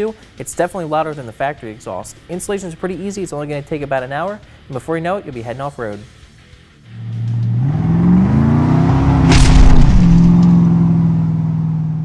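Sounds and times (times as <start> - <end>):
car engine revving: 6.8 - 12.0
exhaust crack: 6.8 - 12.0.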